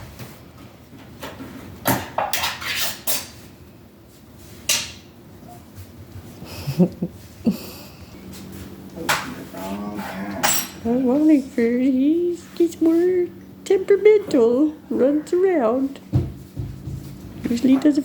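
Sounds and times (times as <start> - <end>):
dishes and cutlery clinking: 10.4 - 10.9.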